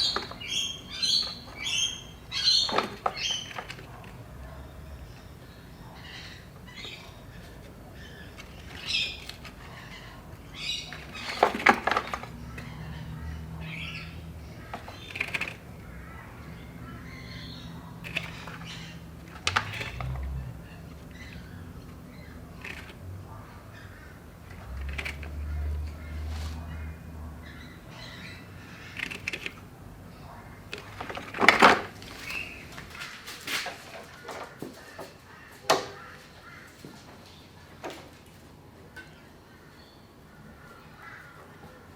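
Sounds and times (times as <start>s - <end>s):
birds squawking: 0.0s - 41.9s
clicks and knocks of objects handled: 10.9s - 12.7s, 14.7s - 15.9s, 30.7s - 39.2s.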